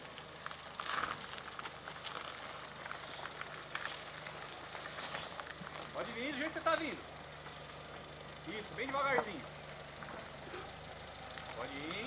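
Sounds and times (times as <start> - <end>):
car engine running at low revs: 0.0 - 12.0
tyres crackling on stones: 0.0 - 12.0.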